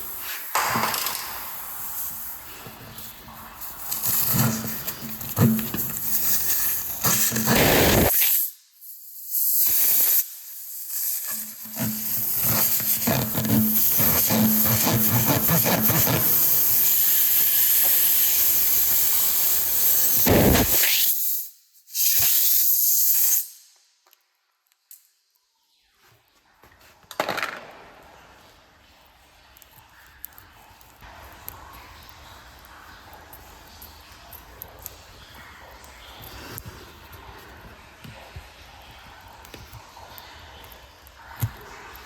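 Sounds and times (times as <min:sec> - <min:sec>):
air hissing out of tire: 0:00.0 - 0:13.1, 0:15.4 - 0:23.7
repair tool scraping and clicking: 0:00.1 - 0:08.2, 0:10.9 - 0:18.5.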